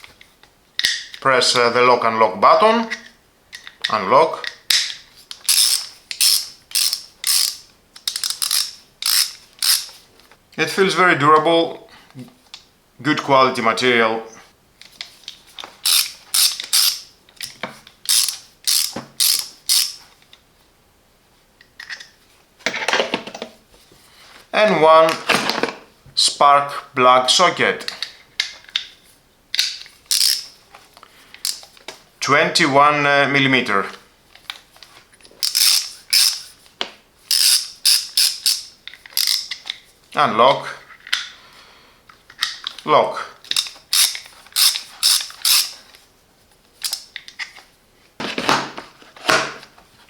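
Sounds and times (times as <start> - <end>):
socket ratchet clicking: 4.4 - 10.0, 15.8 - 20.1, 29.6 - 30.6, 31.4 - 31.7, 35.4 - 36.6, 37.3 - 39.8, 43.5 - 45.8.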